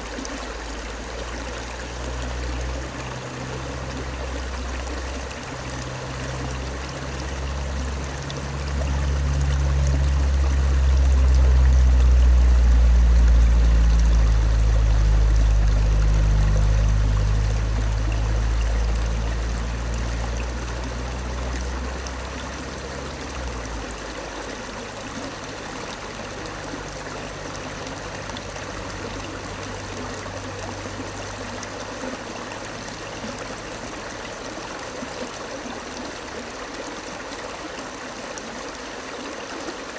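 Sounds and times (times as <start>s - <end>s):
stream water rushing: 0.0s - 39.9s
deep low rumble: 6.5s - 23.8s.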